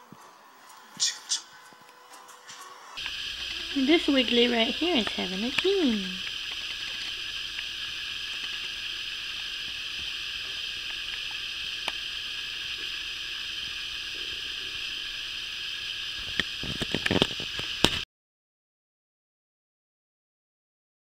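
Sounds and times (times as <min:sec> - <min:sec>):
steady background hiss: 0:00.2 - 0:18.0
sharp crackling clicks and knocks: 0:02.5 - 0:12.1, 0:16.2 - 0:18.0.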